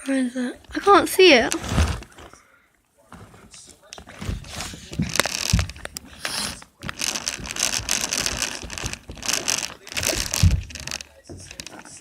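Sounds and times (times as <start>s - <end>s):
toy car gears and wheels rattling: 6.9s - 11.8s.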